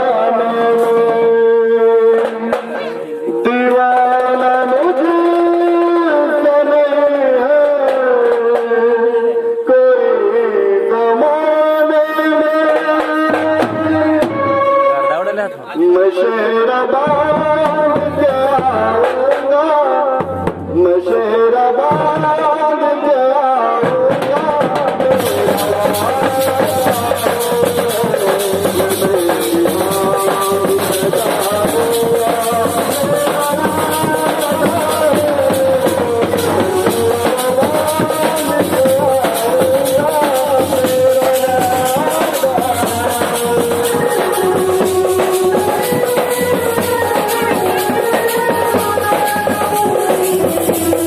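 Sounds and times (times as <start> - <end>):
percussion beat: 0.0 - 9.2, 12.2 - 22.7, 23.7 - 51.0
instrumental accompaniment: 11.9 - 22.5, 23.7 - 51.0
person singing long notes: 15.9 - 51.0
sustained melody line: 40.1 - 51.0.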